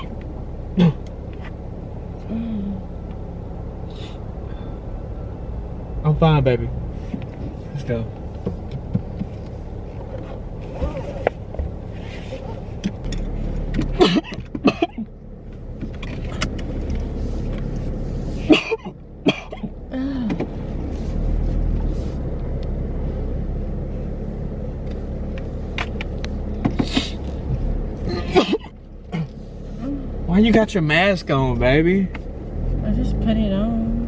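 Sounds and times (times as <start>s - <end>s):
car engine and road rumble: 0.0s - 34.0s
person coughing: 14.0s - 15.0s, 18.5s - 20.2s, 28.1s - 28.7s.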